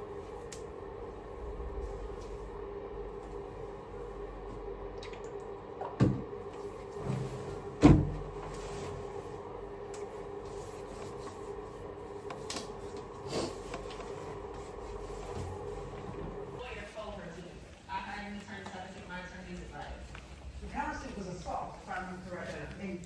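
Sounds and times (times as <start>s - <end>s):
low hum: 0.0s - 17.5s.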